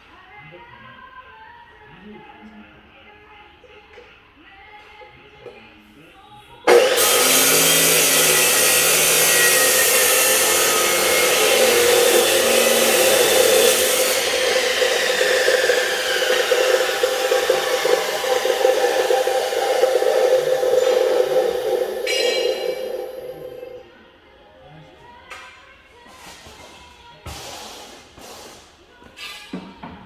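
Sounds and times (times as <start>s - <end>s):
power tool humming and hissing: 6.7s - 23.8s.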